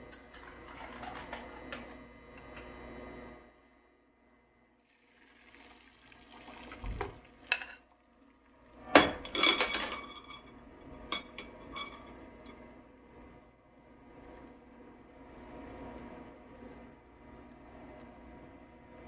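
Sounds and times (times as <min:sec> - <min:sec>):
dishes and utensils clattering: 0:08.9 - 0:12.6.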